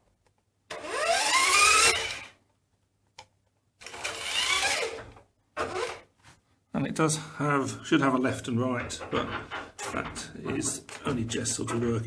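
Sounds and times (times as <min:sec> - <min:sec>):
toy motor and gears whirring: 0:00.7 - 0:02.3, 0:03.8 - 0:05.0.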